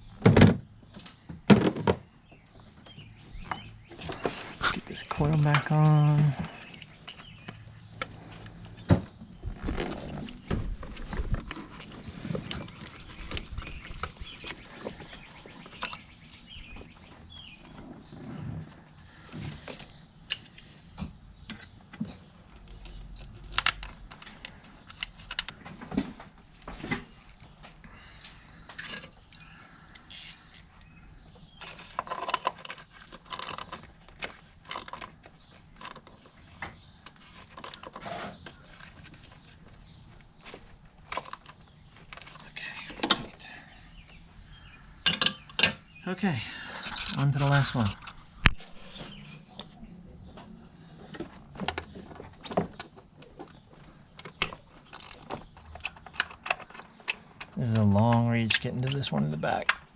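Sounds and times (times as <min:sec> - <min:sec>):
metallic clicks and rattles: 0:54.2 - 0:57.9.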